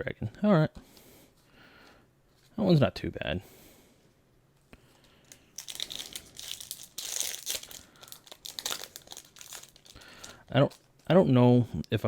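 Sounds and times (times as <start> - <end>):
foil wrapper crinkling and tearing: 5.2 - 11.1.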